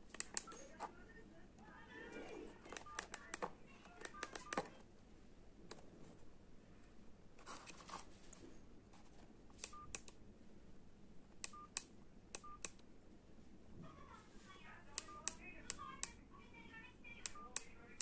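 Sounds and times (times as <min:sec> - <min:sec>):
phone keypad clicks: 0:02.7 - 0:04.8.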